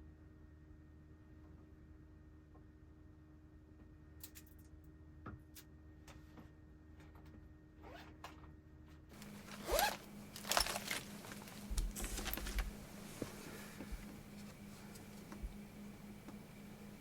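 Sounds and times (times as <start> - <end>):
faint steady hum: 9.2 - 17.0
zipper being pulled: 9.2 - 17.0.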